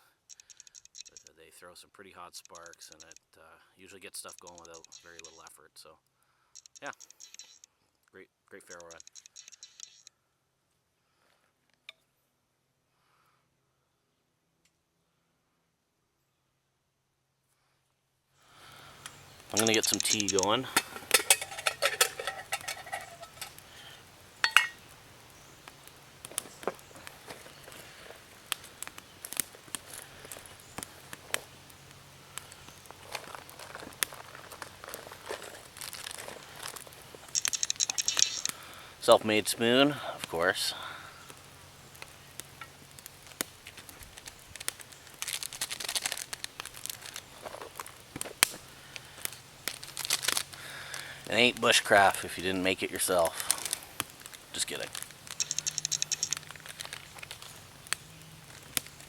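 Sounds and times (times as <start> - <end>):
small fire crackling: 0.0 - 1.5, 2.4 - 3.2, 4.2 - 7.6, 18.4 - 59.0
handling rustle: 19.0 - 31.6, 32.4 - 38.6, 41.9 - 51.1, 53.0 - 59.0
metal cookware clinking: 19.6 - 23.6, 24.4 - 24.8.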